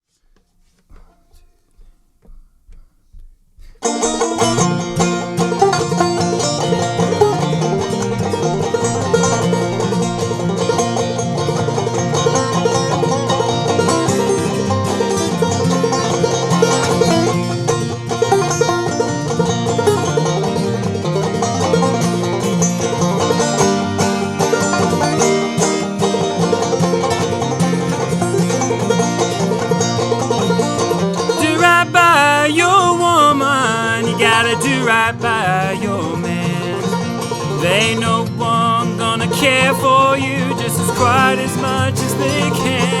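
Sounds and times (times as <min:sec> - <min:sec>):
faint taps: 0:00.3 - 0:04.0
clawhammer banjo playing: 0:03.8 - 0:43.0
low bass notes: 0:04.4 - 0:43.0.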